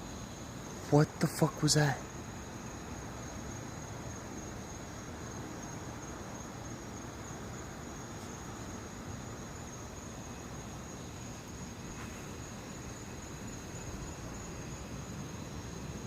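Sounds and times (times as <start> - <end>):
outdoor background hiss: 0.0 - 16.0.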